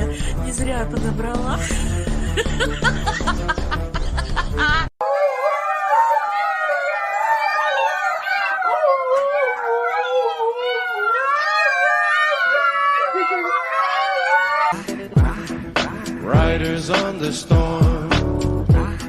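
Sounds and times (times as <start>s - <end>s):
dogs howling: 5.0s - 14.8s
music with steady beat: 14.8s - 19.0s.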